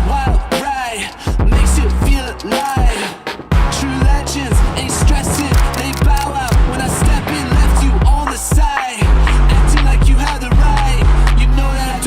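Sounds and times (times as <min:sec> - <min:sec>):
gliding vocal line: 0:00.0 - 0:12.0
music with heavy bass beat: 0:00.0 - 0:12.0.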